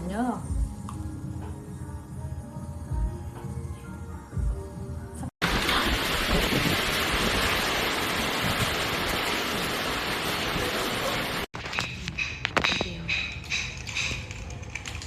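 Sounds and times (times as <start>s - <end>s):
rushing falling water: 5.4s - 11.5s.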